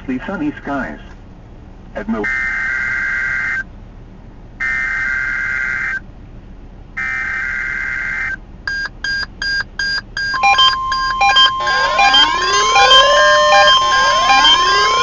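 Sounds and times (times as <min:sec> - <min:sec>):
quick pulsed beeps: 0:08.7 - 0:15.0
steady alarm tone: 0:08.7 - 0:15.0
warbling data tones: 0:10.2 - 0:15.0.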